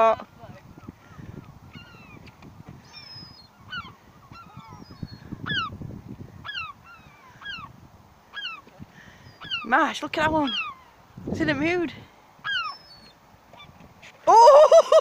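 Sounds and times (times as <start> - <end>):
gulls squealing calls: 0.8 - 2.2, 2.8 - 5.8, 6.4 - 9.8, 10.4 - 11.0, 12.4 - 15.0.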